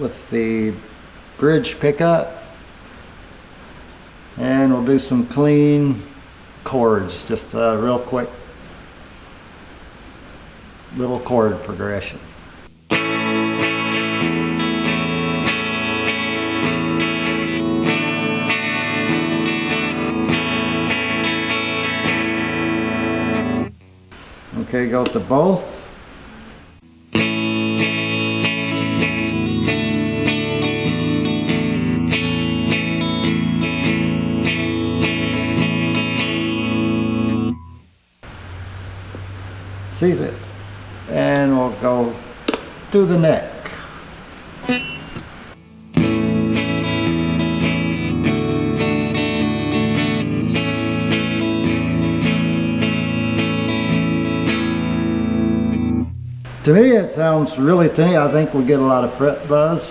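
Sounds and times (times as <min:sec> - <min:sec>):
clean electric guitar strumming: 0:12.7 - 0:25.5, 0:26.3 - 0:37.9, 0:44.6 - 0:59.7.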